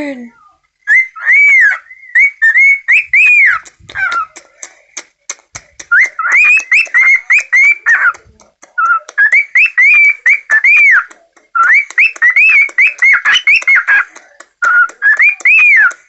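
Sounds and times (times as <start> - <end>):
pet bird whistling: 0.9 - 4.4, 5.9 - 8.0.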